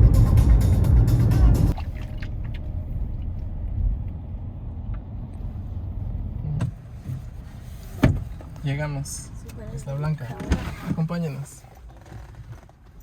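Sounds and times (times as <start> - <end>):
music: 0.0 - 1.7
car engine and road noise: 0.0 - 13.0.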